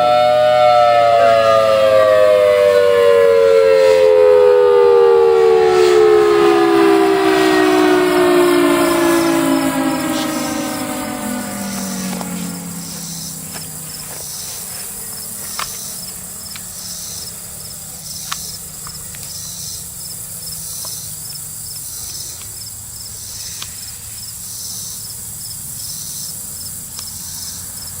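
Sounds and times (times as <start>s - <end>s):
siren winding down: 0.0s - 17.4s
constant high buzz: 0.0s - 28.0s
insects chirping in pulsing chorus: 0.0s - 28.0s.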